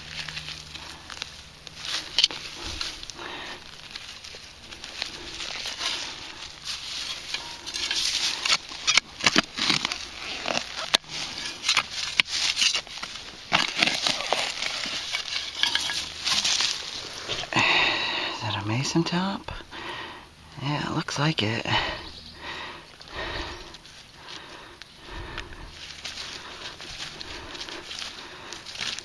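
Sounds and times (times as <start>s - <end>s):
digging tool scraping soil: 0.0s - 17.5s.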